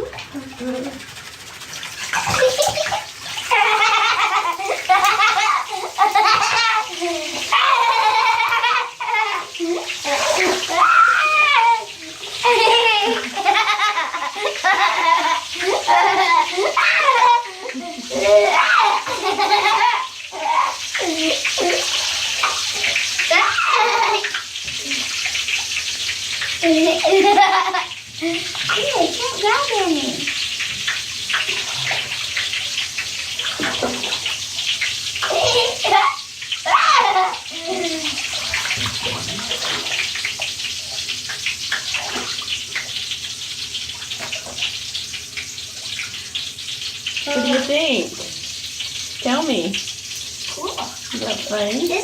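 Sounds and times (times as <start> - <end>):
bathwater splashing: 0.0 - 52.0
child laughing and giggling: 0.3 - 1.0, 2.3 - 21.9, 23.2 - 25.1, 26.6 - 30.2, 35.3 - 38.2
child vocalizing: 0.3 - 1.0, 47.3 - 47.7.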